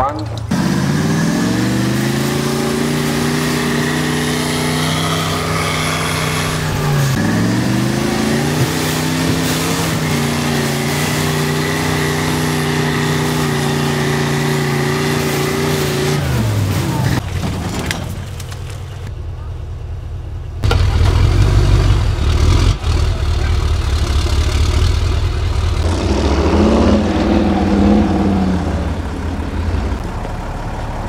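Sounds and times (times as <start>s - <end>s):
truck engine revving high: 0.4s - 17.2s, 20.6s - 31.0s.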